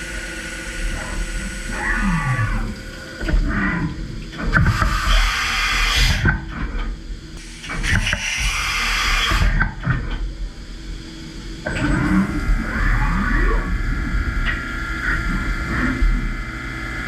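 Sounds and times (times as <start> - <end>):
loud hissing cutting noise: 0.0 - 3.2, 4.6 - 6.2, 7.4 - 9.6
milling machine running: 0.0 - 17.0.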